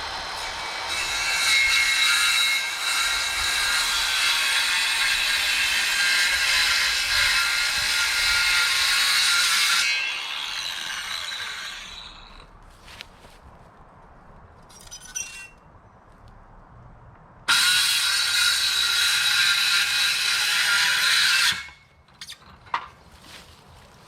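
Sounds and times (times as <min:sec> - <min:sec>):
power saw cutting wood: 0:00.0 - 0:12.4, 0:17.5 - 0:21.8.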